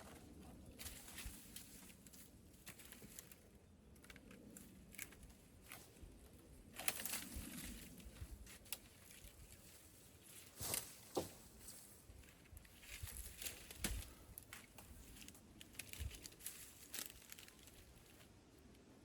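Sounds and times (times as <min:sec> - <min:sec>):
rustling and crackling: 0:00.0 - 0:19.0.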